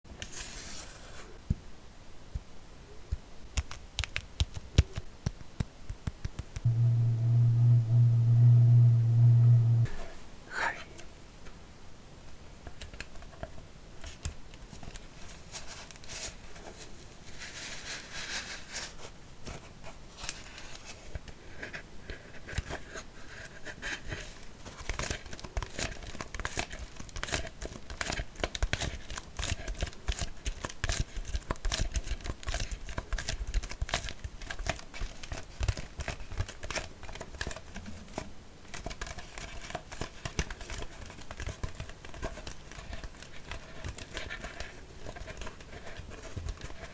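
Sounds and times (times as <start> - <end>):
tapping and scratching on plastic: 3.5 - 6.7, 23.8 - 46.9.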